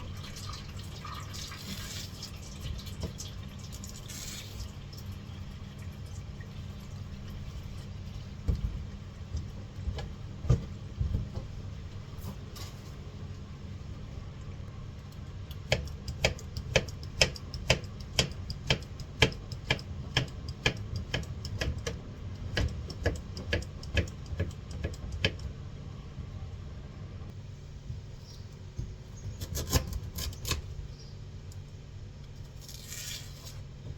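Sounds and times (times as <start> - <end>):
knife chopping fruit: 15.5 - 25.4.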